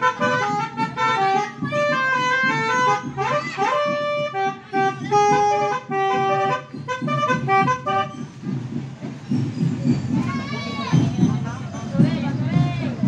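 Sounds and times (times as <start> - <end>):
reedy melody: 0.0 - 8.7
busy background noise: 0.0 - 13.0.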